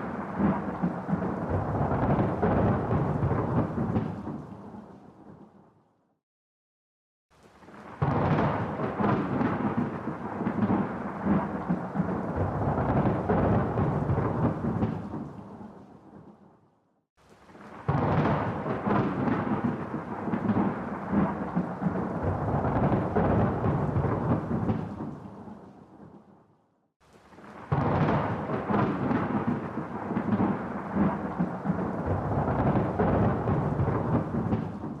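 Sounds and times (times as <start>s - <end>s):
thunder rolling: 0.0s - 5.4s, 7.8s - 16.2s, 17.5s - 26.2s, 27.5s - 35.0s.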